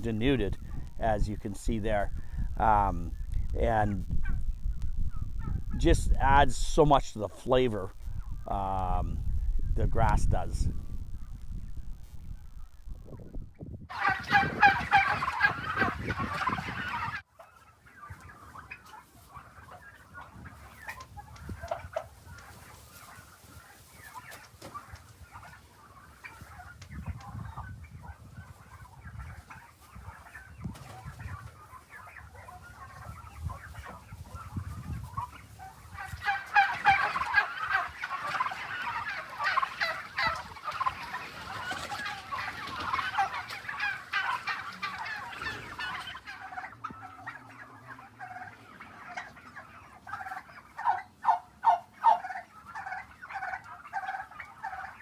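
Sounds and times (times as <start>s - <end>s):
low muffled thumps: 0.0s - 13.9s
young turkeys gobbling: 0.0s - 55.0s.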